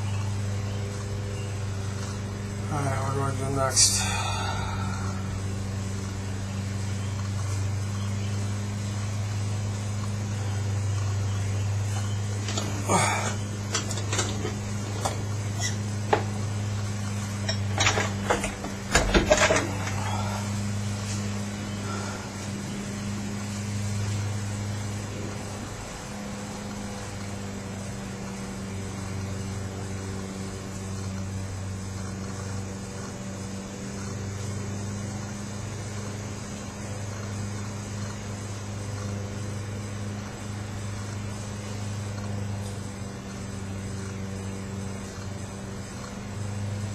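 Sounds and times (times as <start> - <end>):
low electrical hum: 0.0 - 46.9
metal tools clanking: 12.4 - 16.4, 17.2 - 20.5.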